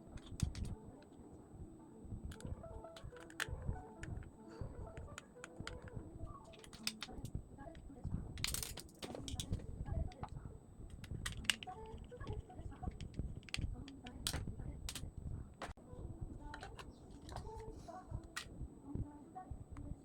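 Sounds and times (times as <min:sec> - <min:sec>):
small parts clicking and tapping: 0:00.0 - 0:00.8, 0:02.3 - 0:04.3, 0:04.9 - 0:07.8, 0:08.4 - 0:15.8.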